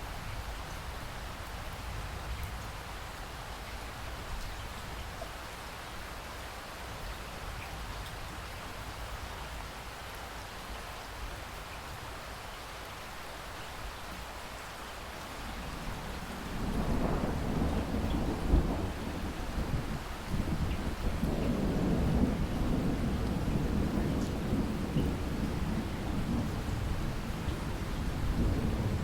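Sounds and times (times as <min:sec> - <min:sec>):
steady rain: 0:00.0 - 0:29.0
thunder rumble and clap: 0:15.9 - 0:29.0.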